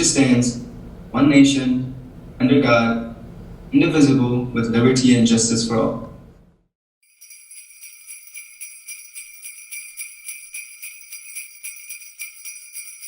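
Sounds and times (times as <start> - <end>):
sleigh bells jingling: 7.0 - 13.0.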